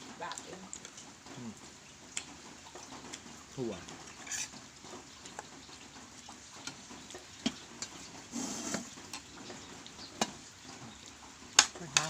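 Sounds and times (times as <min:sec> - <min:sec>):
utensil rustling scrape: 0:08.3 - 0:08.9.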